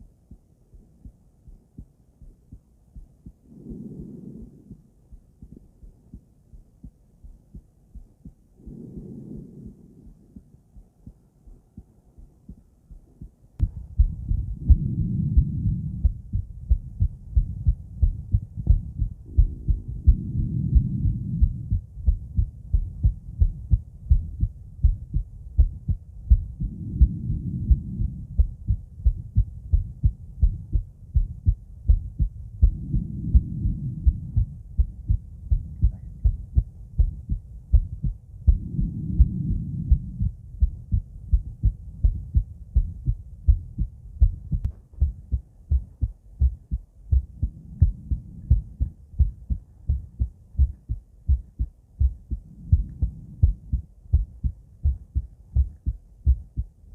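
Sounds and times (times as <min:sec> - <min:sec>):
heartbeat through stethoscope: 0:00.0 - 0:56.9
soft rushing noise: 0:03.4 - 0:05.6, 0:08.6 - 0:10.6.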